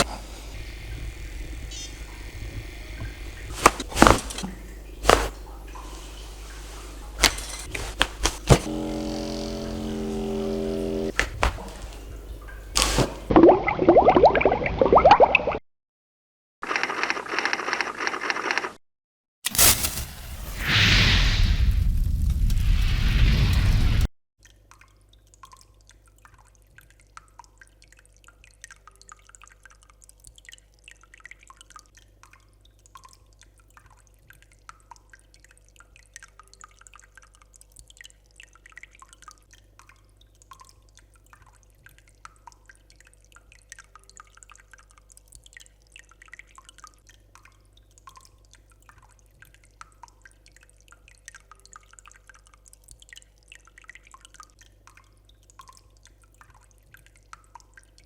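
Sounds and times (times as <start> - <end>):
low electrical hum: 0.0 - 13.3
water dripping: 0.0 - 15.6, 24.4 - 58.0.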